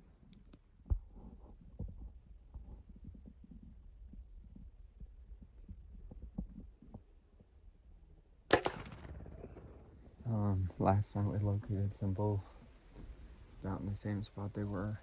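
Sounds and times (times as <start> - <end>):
faint low rumble: 0.0 - 15.0
soft taps and rustles: 0.3 - 7.6.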